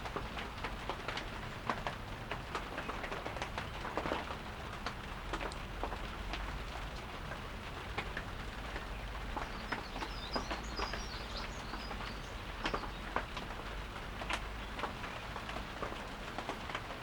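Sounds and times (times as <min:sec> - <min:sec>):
light rain drops: 0:00.0 - 0:17.0
small bird chirping: 0:09.4 - 0:13.0.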